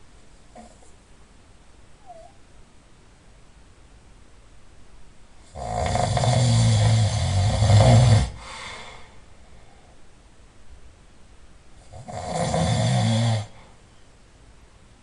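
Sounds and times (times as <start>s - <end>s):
person snoring: 5.5s - 9.0s, 11.8s - 13.7s.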